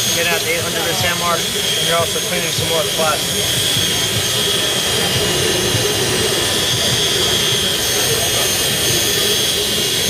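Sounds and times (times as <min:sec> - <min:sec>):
drill high whine: 0:00.0 - 0:10.0.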